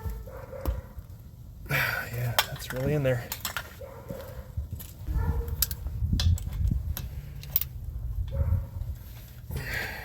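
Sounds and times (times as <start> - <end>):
hand tools clicking and knocking: 2.2 - 3.8.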